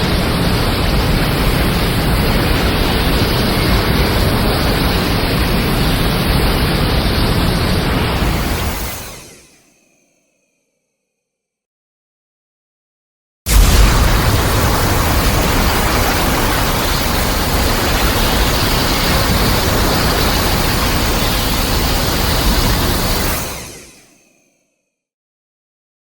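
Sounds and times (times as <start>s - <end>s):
dense rushing noise: 0.0s - 9.3s, 13.5s - 23.8s
deep rumble: 13.5s - 21.1s.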